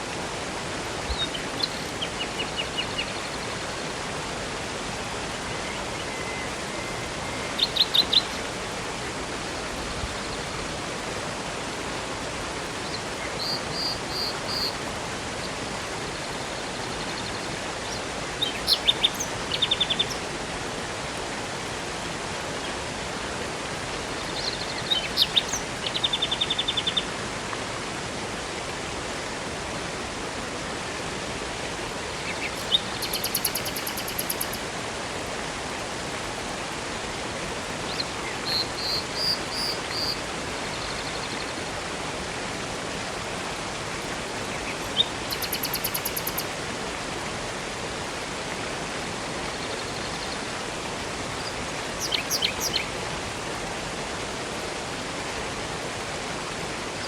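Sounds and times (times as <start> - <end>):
river rushing: 0.0 - 57.0
birds trilling: 18.4 - 19.4, 25.0 - 25.6, 32.6 - 34.6, 44.9 - 46.5, 52.0 - 52.8.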